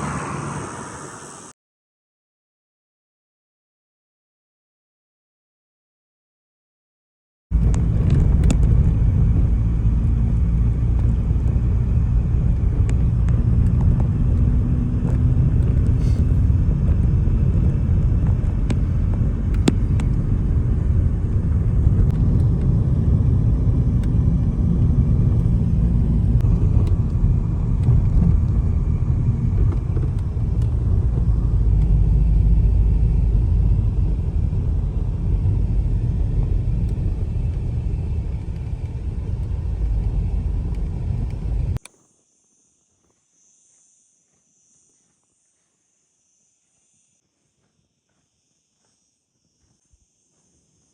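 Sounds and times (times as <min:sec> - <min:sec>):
car road and engine rumble: 0:00.0 - 0:01.5, 0:07.5 - 0:41.8.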